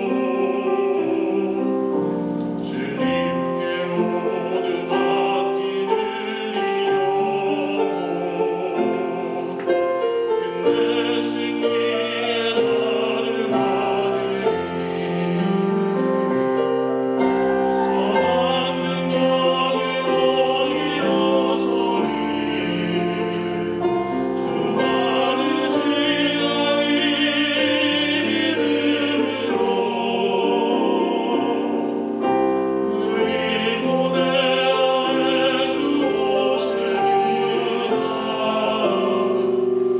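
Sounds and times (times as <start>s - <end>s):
vocal trio singing in harmony: 0.0s - 39.9s.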